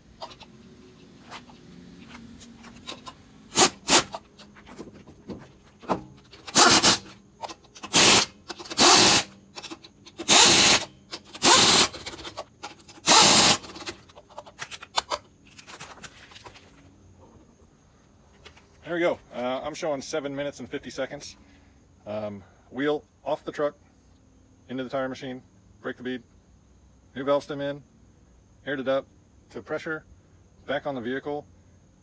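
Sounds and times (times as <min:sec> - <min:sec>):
metallic clicks of nuts: 0:00.1 - 0:00.6, 0:02.0 - 0:04.6, 0:05.9 - 0:16.1
impact wrench bursts: 0:02.0 - 0:04.5, 0:05.8 - 0:14.0.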